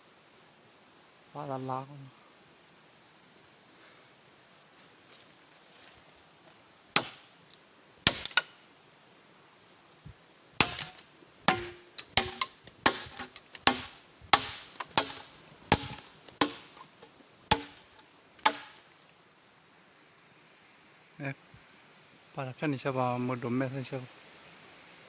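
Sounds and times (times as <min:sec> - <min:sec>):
blade chopping wood: 0:07.0 - 0:07.2, 0:08.0 - 0:08.5, 0:10.6 - 0:16.9, 0:17.5 - 0:18.8.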